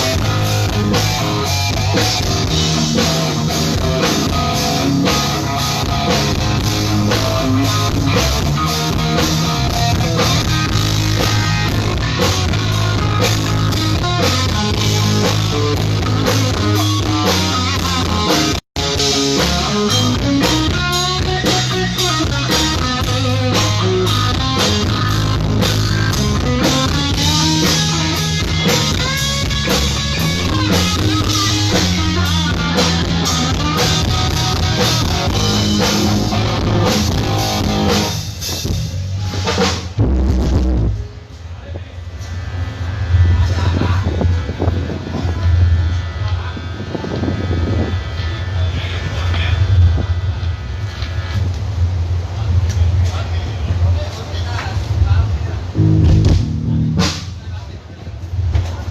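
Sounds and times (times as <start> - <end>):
loud rock music: 0.0 - 41.5, 55.7 - 57.6.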